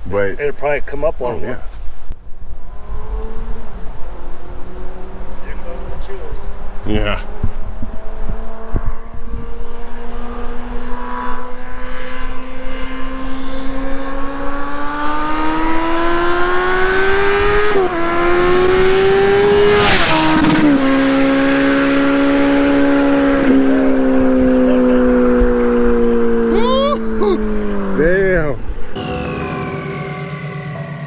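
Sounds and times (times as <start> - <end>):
motorcycle engine accelerating: 2.2 - 26.5, 29.0 - 31.0
motorcycle passing by: 2.4 - 26.5.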